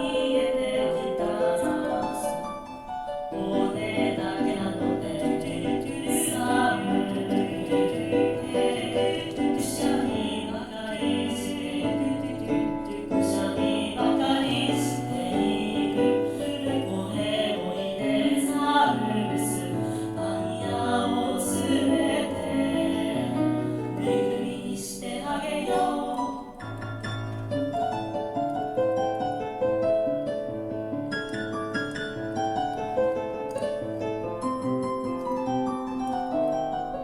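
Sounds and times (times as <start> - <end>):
choir singing: 0.0 - 26.7
piano accompaniment: 0.0 - 37.0.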